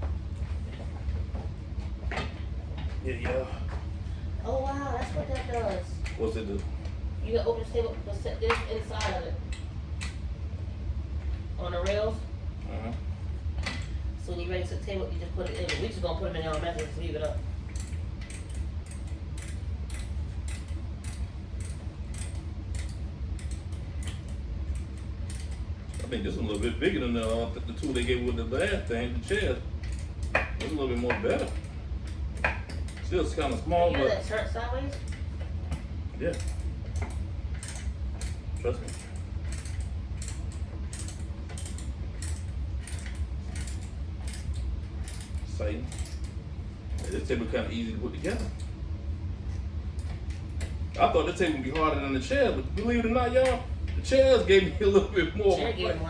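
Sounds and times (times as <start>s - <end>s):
steady low hum: 0.0s - 56.0s
tool clicking on bolt: 16.5s - 46.4s, 47.0s - 47.4s.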